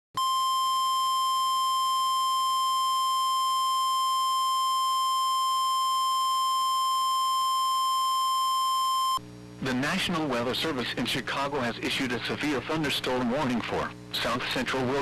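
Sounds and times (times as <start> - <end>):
steady high alarm tone: 0.2 - 9.2.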